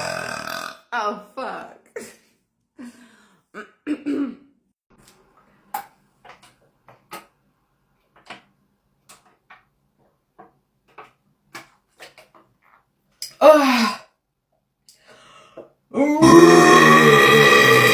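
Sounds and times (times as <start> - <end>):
woman burping: 16.0 - 17.9.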